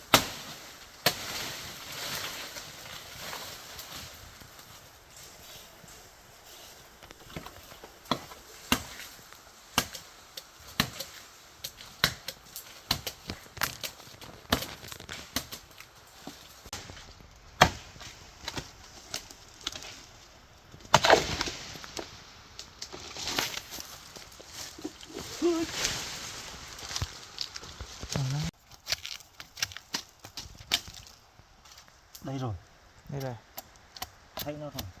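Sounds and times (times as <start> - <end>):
rustling noise: 1.3 - 9.6, 21.3 - 32.1
chopping wood: 7.3 - 9.1, 9.8 - 10.1, 10.7 - 15.8, 17.6 - 18.7, 20.8 - 21.6.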